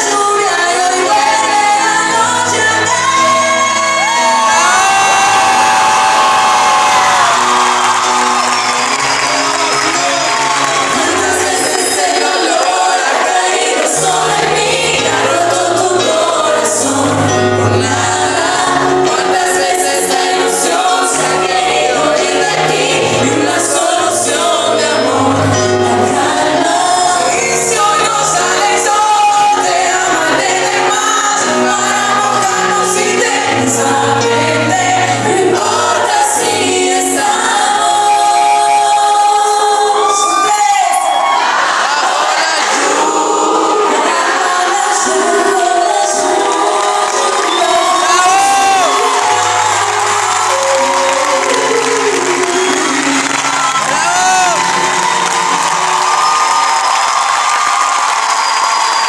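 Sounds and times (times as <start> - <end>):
live pop band: 0.0 - 59.0
voices singing together: 0.0 - 59.0.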